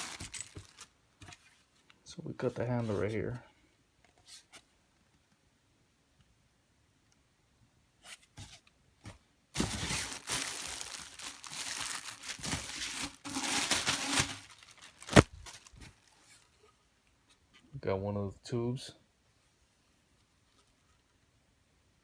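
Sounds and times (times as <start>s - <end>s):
packaging crinkling and tearing: 0.0s - 0.9s, 9.6s - 16.2s.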